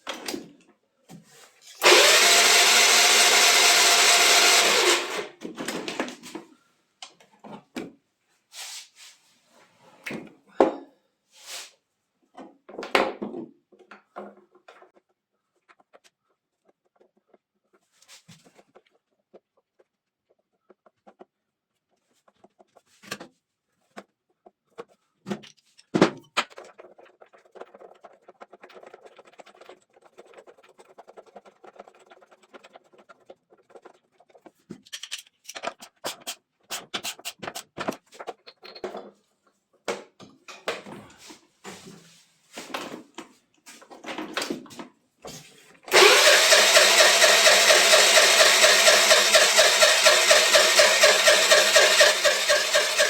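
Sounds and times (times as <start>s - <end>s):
motor running with fast pulsing: 1.8s - 5.3s, 45.9s - 53.0s.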